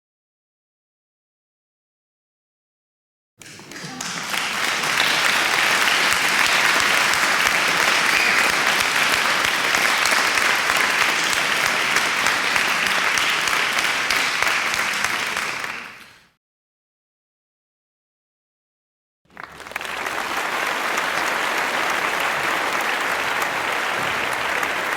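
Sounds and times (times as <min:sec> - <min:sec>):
crowd applauding: 0:03.4 - 0:16.3, 0:19.3 - 0:24.9.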